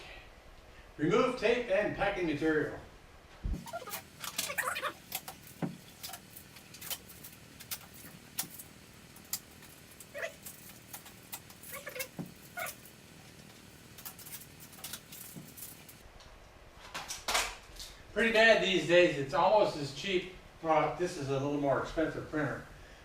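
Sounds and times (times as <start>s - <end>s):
packing tape and plastic crinkling: 3.6s - 16.0s.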